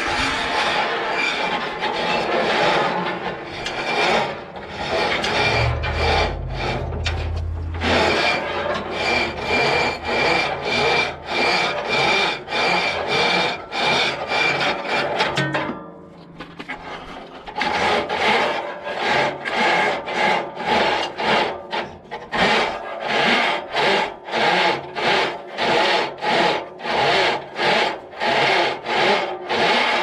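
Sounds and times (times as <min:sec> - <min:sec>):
deep rumble: 0:03.5 - 0:13.1.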